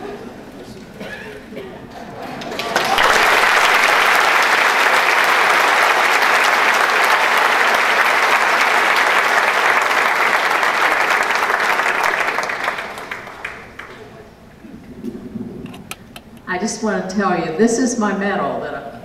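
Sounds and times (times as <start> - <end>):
audience applauding: 1.9 - 14.3.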